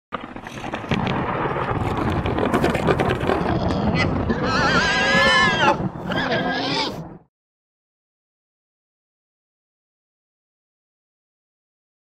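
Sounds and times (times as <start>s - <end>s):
hogs grunting: 3.3s - 7.0s
hog squealing: 3.8s - 7.0s.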